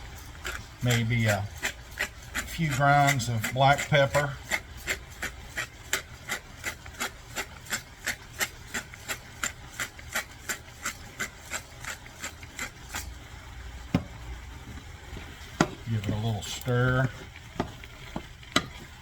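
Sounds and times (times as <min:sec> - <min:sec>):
pepper mill grinding: 0:00.0 - 0:13.2.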